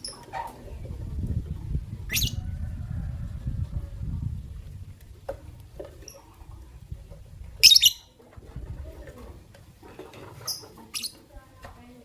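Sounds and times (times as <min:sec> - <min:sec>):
lovebird chirping: 0:07.6 - 0:08.1, 0:10.5 - 0:11.2.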